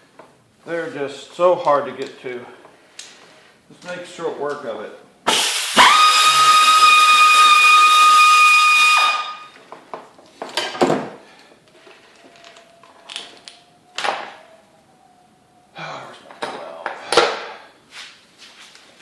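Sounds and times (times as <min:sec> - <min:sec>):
air tool hissing and whining: 0:05.3 - 0:09.3.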